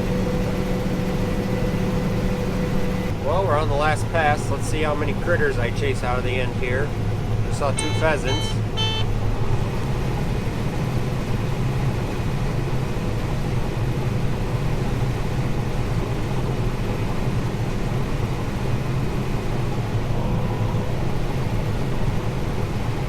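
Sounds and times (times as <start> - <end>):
combine harvester droning: 0.0 - 9.8.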